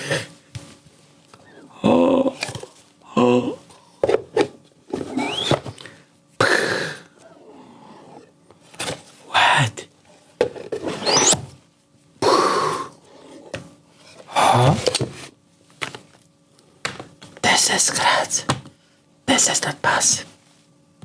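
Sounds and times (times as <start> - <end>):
man making comic vocal noises: 3.1 - 3.6.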